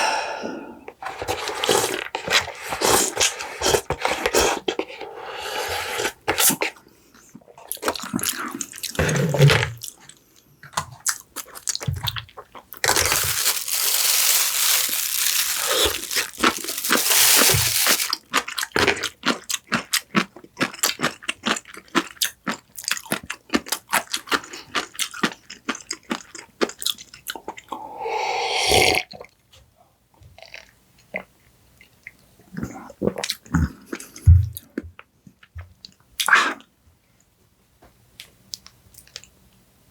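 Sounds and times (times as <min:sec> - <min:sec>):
person crunching fried food: 0:11.1 - 0:27.4.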